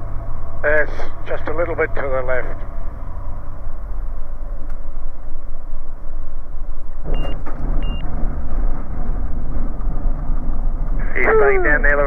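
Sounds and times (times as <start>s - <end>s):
aircraft engine and airflow drone: 0.0s - 12.0s
short high beeps: 7.2s - 8.0s.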